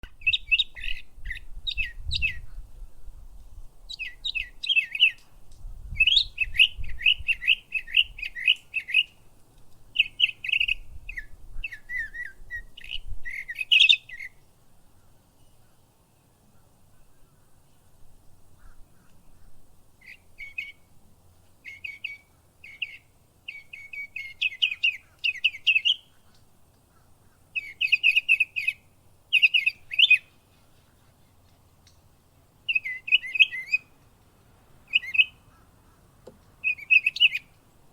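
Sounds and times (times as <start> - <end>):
mockingbird singing: 0.0 - 2.8, 3.9 - 5.3, 5.9 - 9.2, 10.0 - 15.9, 18.6 - 20.9, 21.6 - 32.0, 32.6 - 34.0, 34.9 - 37.6.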